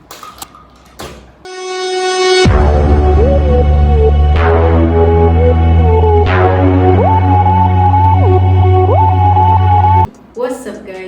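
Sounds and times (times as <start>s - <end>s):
electronic intro music: 1.5s - 10.1s.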